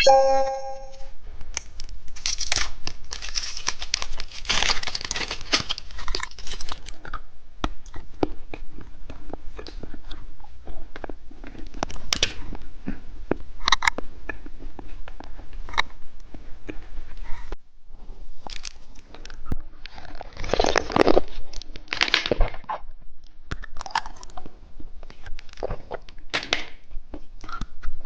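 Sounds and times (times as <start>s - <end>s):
wrapper crinkling: 2.2s - 7.0s
crunching and chewing: 2.2s - 16.8s, 18.4s - 22.9s, 23.5s - 26.2s.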